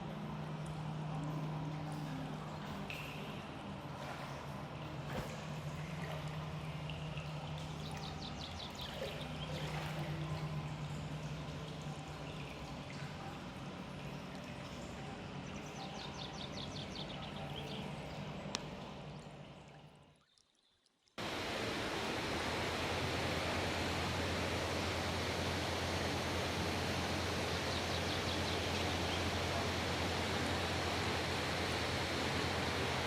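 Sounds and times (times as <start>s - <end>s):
water running and splashing: 1.4s - 15.0s, 21.1s - 33.0s
mountain stream rushing: 21.2s - 33.0s.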